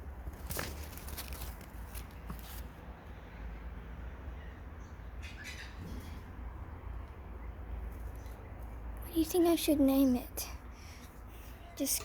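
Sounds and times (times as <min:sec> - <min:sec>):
crackly rustling and handling: 0:00.0 - 0:02.9.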